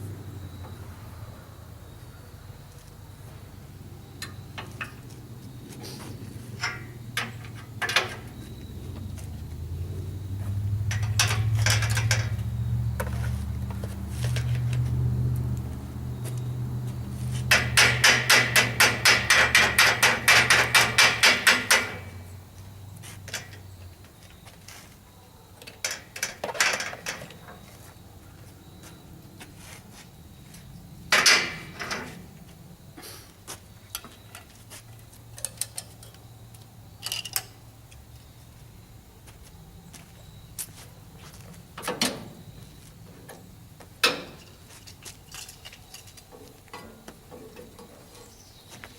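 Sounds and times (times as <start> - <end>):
knocks and clanks: 6.6 - 9.1, 10.4 - 14.8, 17.4 - 22.2, 31.1 - 32.3, 44.0 - 44.6.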